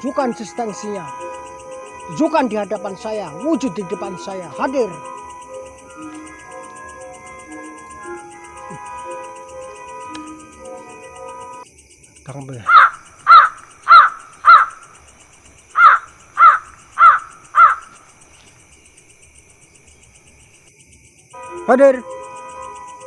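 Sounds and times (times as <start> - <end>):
night insects chirring: 0.0 - 23.0
crow cawing: 12.6 - 15.1, 15.7 - 18.5.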